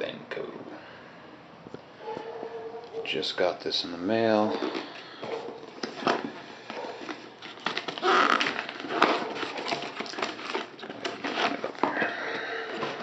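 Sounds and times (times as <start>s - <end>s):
cardboard box rustling and crackling: 4.5s - 13.0s.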